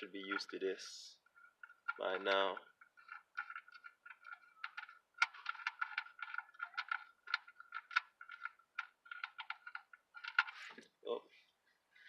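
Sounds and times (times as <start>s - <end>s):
wrench clicking and rattling: 1.4s - 10.7s.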